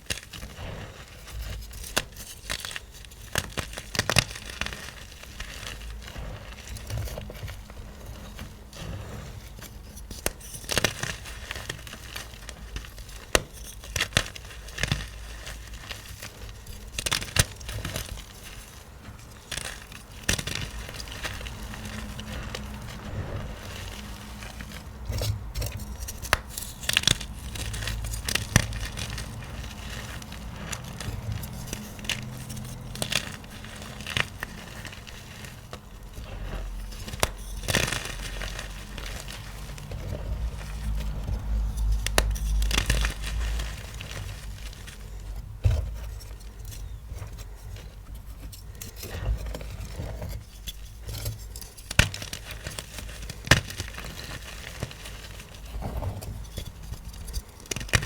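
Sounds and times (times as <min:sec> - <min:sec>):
chalk blocks crunching: 0:00.0 - 0:58.0.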